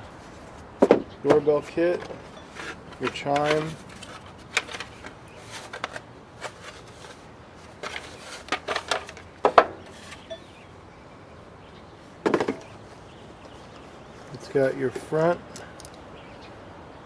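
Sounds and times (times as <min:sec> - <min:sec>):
parts clicking and clattering: 0:00.8 - 0:10.5, 0:14.9 - 0:16.1.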